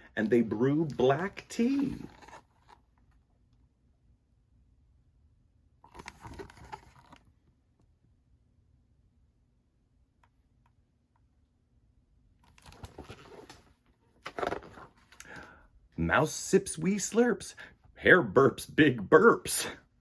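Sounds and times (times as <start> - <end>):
book pages turning: 0.2 - 2.8, 5.9 - 7.2, 12.5 - 15.3.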